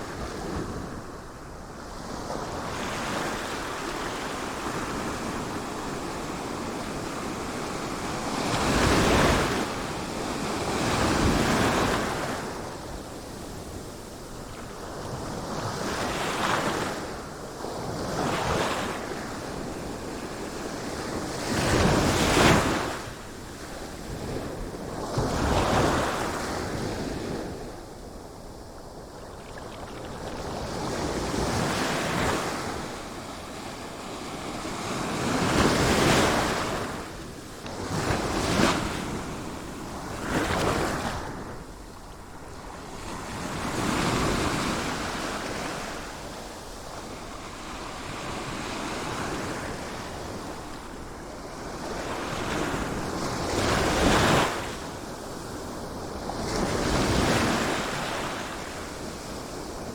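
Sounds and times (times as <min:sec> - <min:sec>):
waves breaking and washing in: 0:00.0 - 0:59.9.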